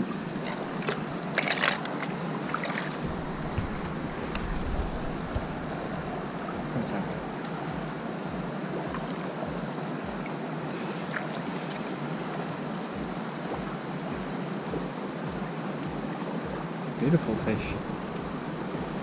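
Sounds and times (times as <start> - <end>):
river current rushing: 0.0 - 19.0
wind buffeting microphone: 3.0 - 10.3, 12.9 - 19.0.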